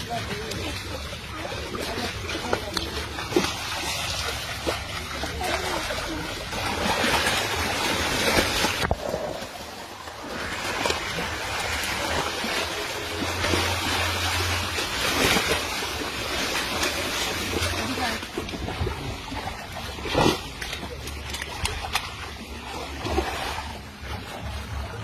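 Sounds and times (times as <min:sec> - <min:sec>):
water rushing and splashing: 0:00.0 - 0:25.0.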